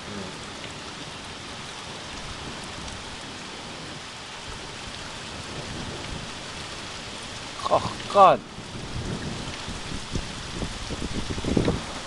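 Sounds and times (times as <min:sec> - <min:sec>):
steady rain falling: 0:00.0 - 0:12.0
low rumble of thunder: 0:02.2 - 0:12.0.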